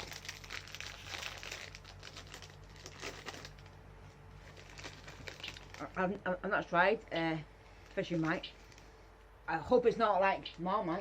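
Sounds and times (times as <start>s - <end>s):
snack packaging crinkling: 0.0s - 6.1s, 7.7s - 9.0s.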